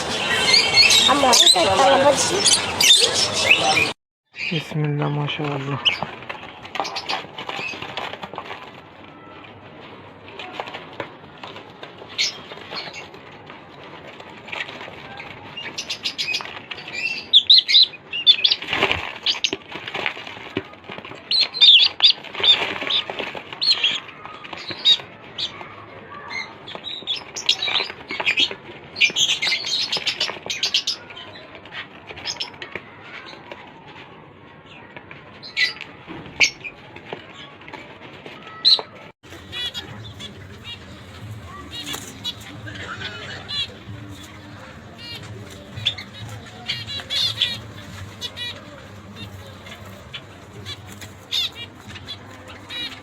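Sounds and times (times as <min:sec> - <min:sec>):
budgerigars chirping: 0:00.0 - 0:04.6, 0:39.3 - 0:53.0
wing flapping: 0:39.2 - 0:53.0.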